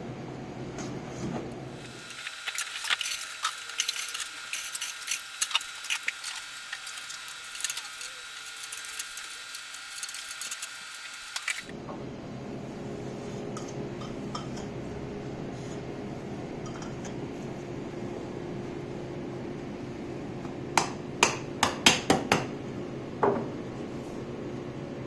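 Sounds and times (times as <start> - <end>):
steady high-pitched whine: 1.7 - 12.9
clicking and clinking of small parts: 1.8 - 11.7.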